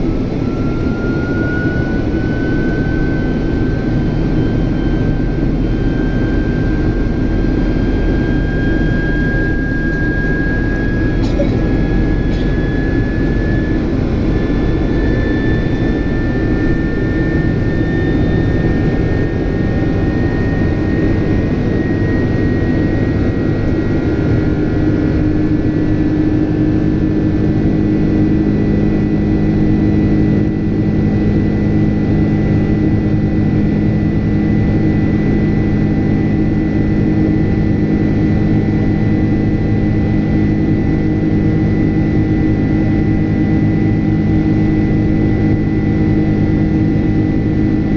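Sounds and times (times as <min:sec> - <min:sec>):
jet engine drone with fan whine: 0:00.0 - 0:47.9.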